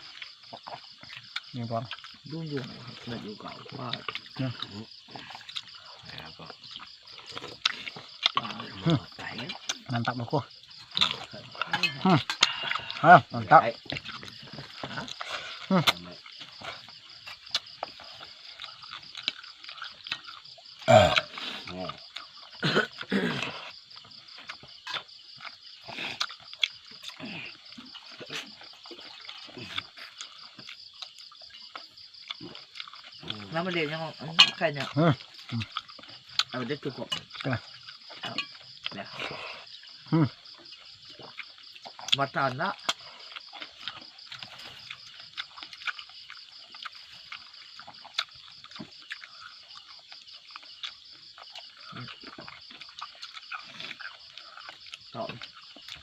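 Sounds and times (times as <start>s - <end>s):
insects calling: 0.0s - 56.0s
wet chewing and smacking: 0.0s - 56.0s.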